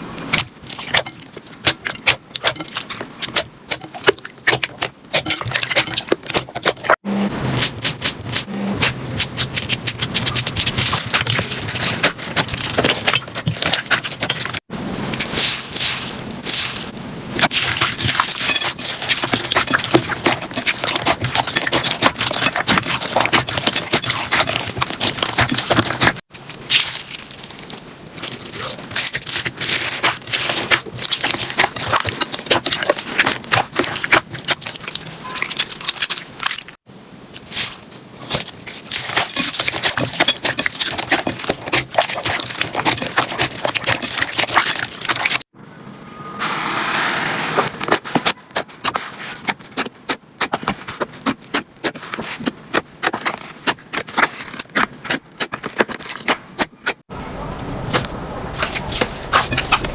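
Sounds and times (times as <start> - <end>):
slime crackling and popping: 0.3 - 36.8.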